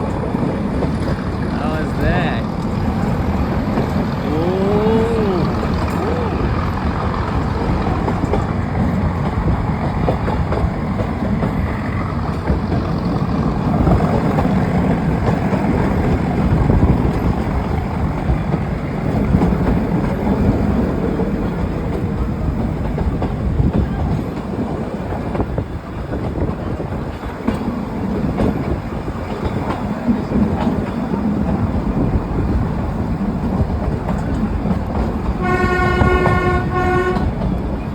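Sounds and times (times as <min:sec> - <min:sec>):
train horn: 0:35.4 - 0:37.5.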